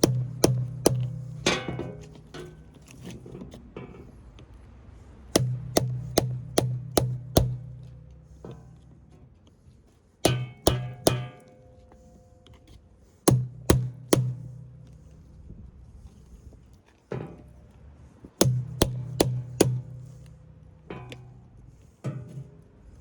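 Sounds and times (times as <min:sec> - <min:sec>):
hammer blows ringing: 0:00.0 - 0:02.6, 0:05.3 - 0:08.8, 0:10.2 - 0:12.1, 0:13.3 - 0:15.1, 0:18.4 - 0:21.2.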